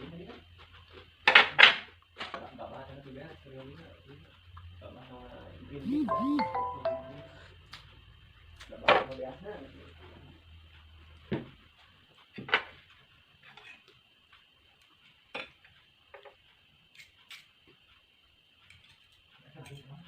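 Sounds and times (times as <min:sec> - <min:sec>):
utensils clinking against a dish: 0:16.9 - 0:17.6, 0:18.6 - 0:20.0.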